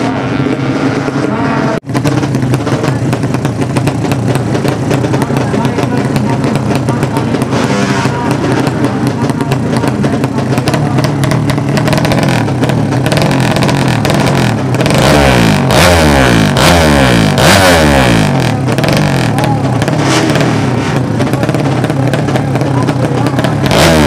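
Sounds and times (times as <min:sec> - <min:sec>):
racing motorcycle engines revving: 0:00.0 - 0:24.0.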